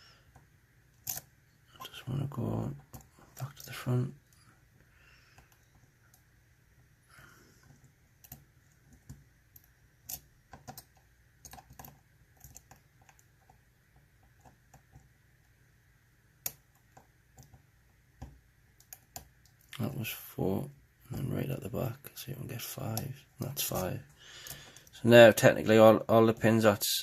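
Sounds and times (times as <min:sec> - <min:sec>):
lock pick clicking and scraping: 0:01.0 - 0:01.3.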